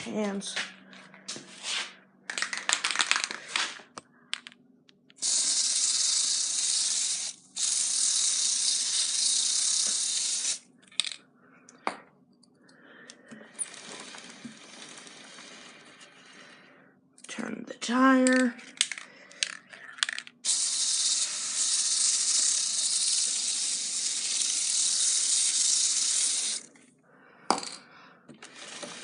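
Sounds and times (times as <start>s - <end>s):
aerosol spray hissing: 5.2s - 10.6s, 20.4s - 26.7s.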